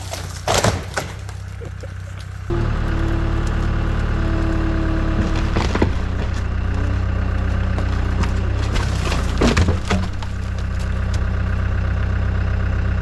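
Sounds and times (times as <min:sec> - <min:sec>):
branches crashing down: 0:00.0 - 0:11.6
wood cracking and splintering: 0:00.0 - 0:11.6
diesel engine running: 0:00.0 - 0:13.0.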